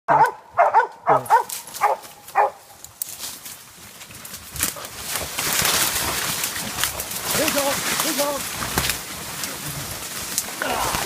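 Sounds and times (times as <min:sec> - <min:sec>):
dog barking: 0:00.1 - 0:02.6.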